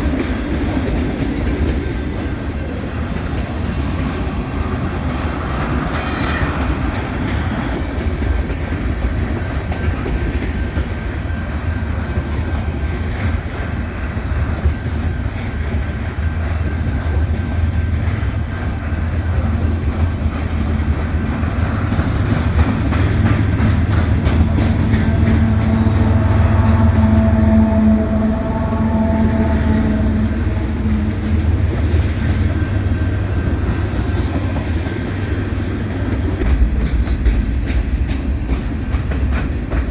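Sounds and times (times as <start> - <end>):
train wheels clattering on rails: 0.0 - 39.9
low droning tone: 24.7 - 31.9.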